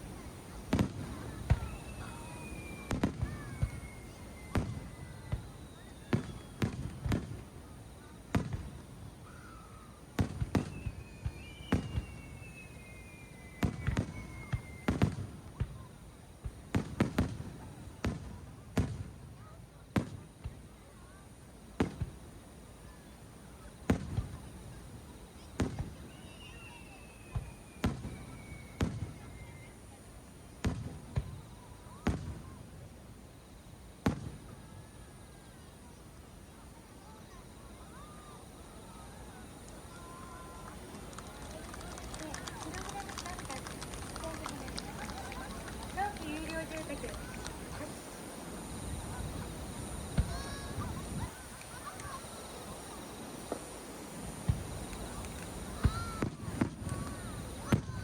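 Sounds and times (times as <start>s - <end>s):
faint falling whistle: 1.3s - 7.2s, 9.2s - 15.9s, 25.7s - 29.8s, 37.2s - 41.4s
fireworks shells bursting: 40.5s - 58.0s.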